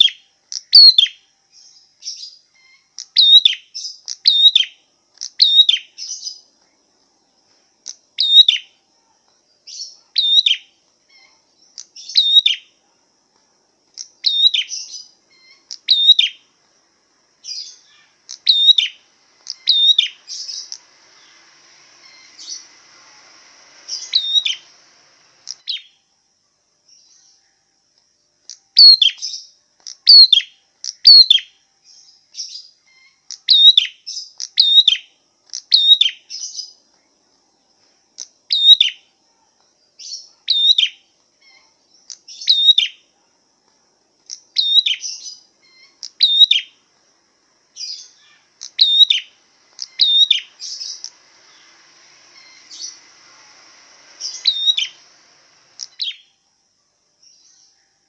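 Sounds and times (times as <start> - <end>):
songbird giving sharp calls: 2.1 - 6.4, 9.7 - 12.7, 14.0 - 16.5, 17.4 - 22.8, 23.8 - 24.8, 28.8 - 31.5, 44.3 - 46.8, 47.8 - 56.4.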